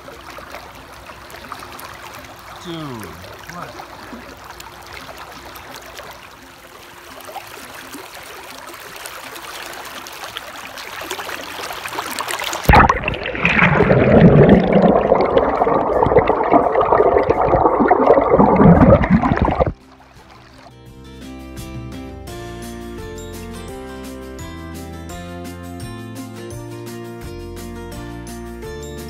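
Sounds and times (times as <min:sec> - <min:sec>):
creek water rushing: 0:00.0 - 0:20.5
muffled underwater churning: 0:12.1 - 0:19.8.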